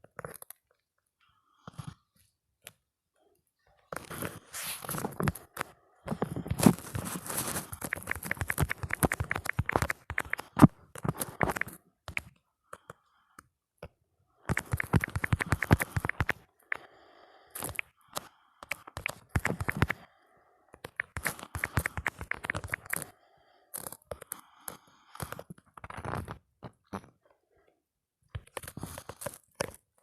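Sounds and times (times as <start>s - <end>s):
rapid keyboard typing clicks: 6.2s - 12.3s, 14.5s - 16.8s, 17.6s - 20.0s, 20.8s - 23.1s.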